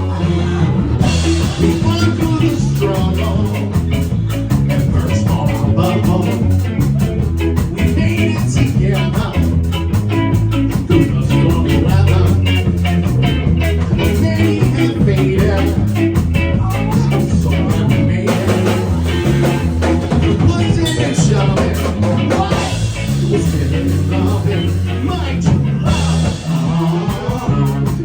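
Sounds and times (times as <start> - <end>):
live band playing: 0.0 - 28.0.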